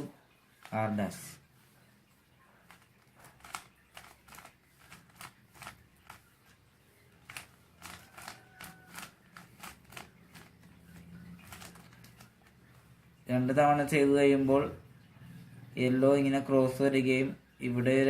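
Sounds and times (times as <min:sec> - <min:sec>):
plastic puzzle cube clicking: 0:02.7 - 0:06.3, 0:07.2 - 0:12.5.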